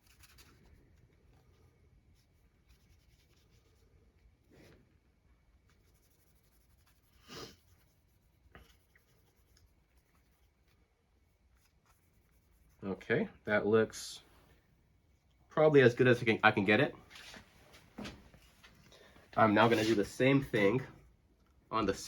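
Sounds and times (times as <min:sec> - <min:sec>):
paper towel rubbing metal: 0:19.4 - 0:20.8.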